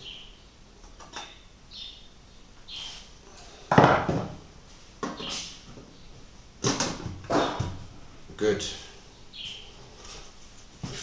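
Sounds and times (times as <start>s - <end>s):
tools and parts clunking: 0.8s - 1.4s.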